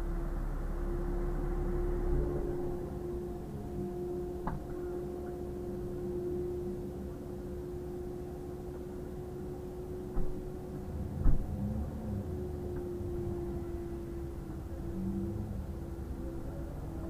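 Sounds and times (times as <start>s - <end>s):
road noise: 0.0s - 17.0s
vehicle engine hum: 0.0s - 17.0s.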